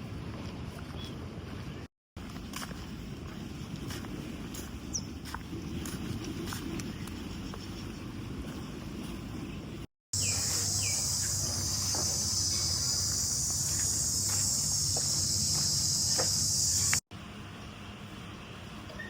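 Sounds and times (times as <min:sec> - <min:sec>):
bird chirps: 0:10.2 - 0:17.0
insects droning: 0:10.2 - 0:17.0.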